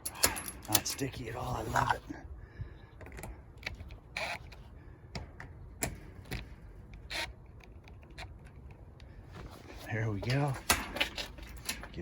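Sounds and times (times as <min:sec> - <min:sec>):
screwdriver scraping: 0:03.6 - 0:04.6, 0:07.0 - 0:08.8.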